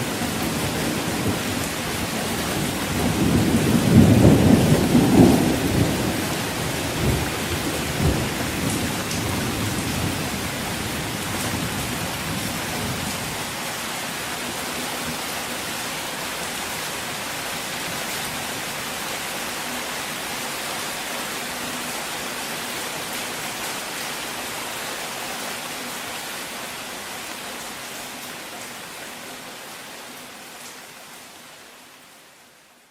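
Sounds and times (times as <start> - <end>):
rain falling: 0.0 - 32.9
low thunder rumble: 2.6 - 13.0.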